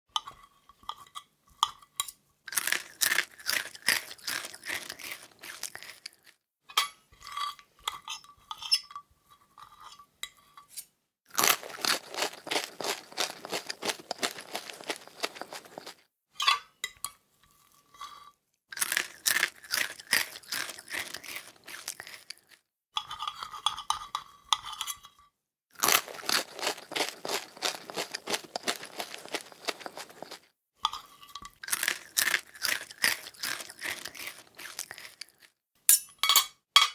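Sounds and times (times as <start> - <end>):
crunchy food being chewed: 2.5 - 6.4, 11.3 - 16.1, 18.7 - 24.3, 25.8 - 35.6.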